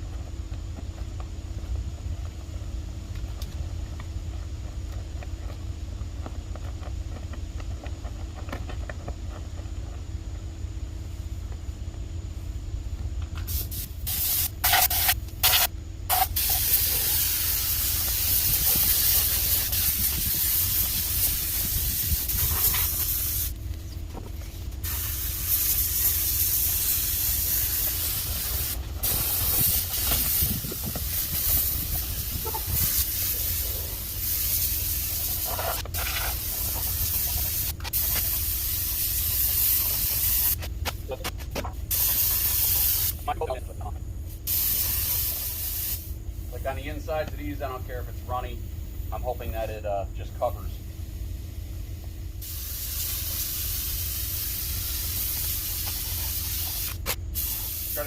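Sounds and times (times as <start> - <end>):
paint spray gun hissing: 13.4 - 23.6, 24.8 - 40.7, 41.8 - 43.2, 44.4 - 46.6, 51.4 - 58.0.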